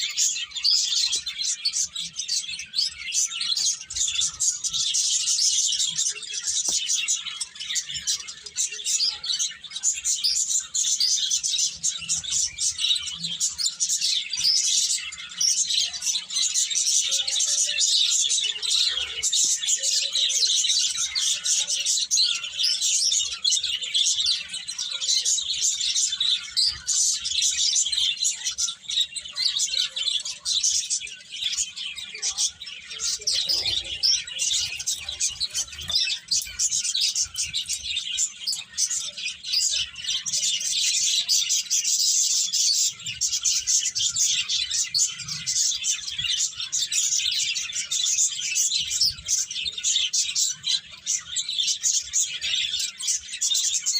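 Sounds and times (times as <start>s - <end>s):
small birds chirping: 0.0s - 53.9s.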